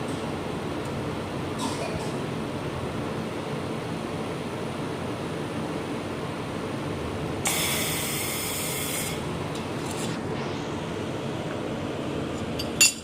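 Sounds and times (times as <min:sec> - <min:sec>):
laser welder hissing: 0:07.5 - 0:09.3.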